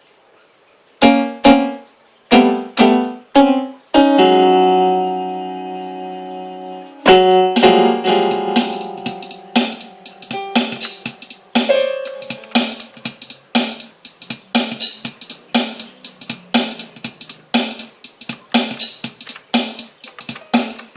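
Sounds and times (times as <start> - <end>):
piano chords: 1.0 - 20.9
steady drum beat: 7.0 - 20.9.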